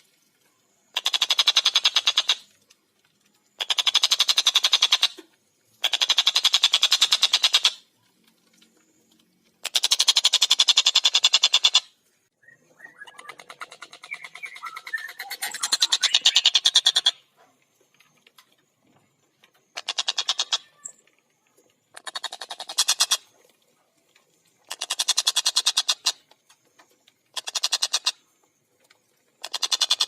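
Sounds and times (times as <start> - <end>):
kingfisher rattling call: 3.6 - 5.1, 12.8 - 17.2, 19.8 - 20.9, 24.7 - 26.3, 27.3 - 28.2, 29.4 - 30.0.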